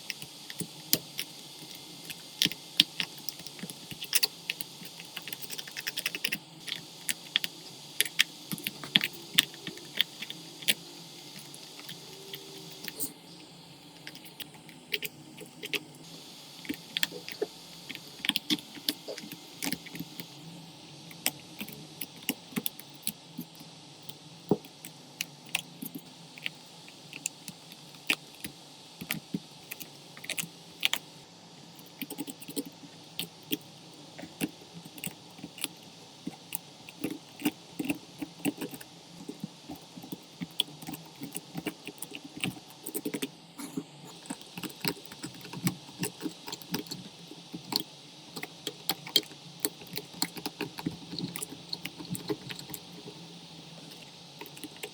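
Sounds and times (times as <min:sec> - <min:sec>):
hand tools clicking and tapping: 0:34.2 - 0:43.3.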